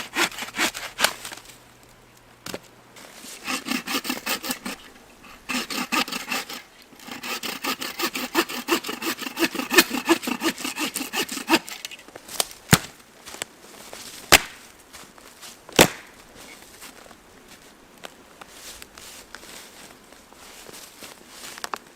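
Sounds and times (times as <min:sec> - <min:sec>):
hand saw cutting wood: 0:00.0 - 0:01.3, 0:03.3 - 0:12.0.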